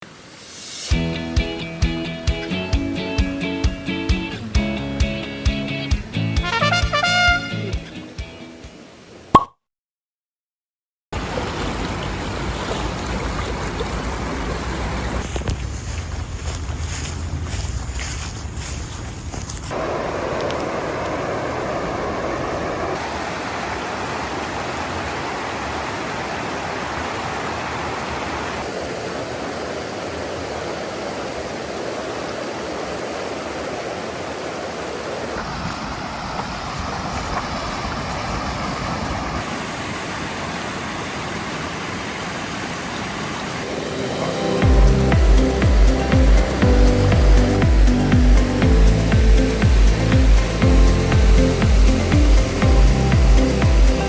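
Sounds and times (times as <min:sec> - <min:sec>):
river water rushing: 0:11.2 - 0:16.5, 0:19.7 - 0:54.0.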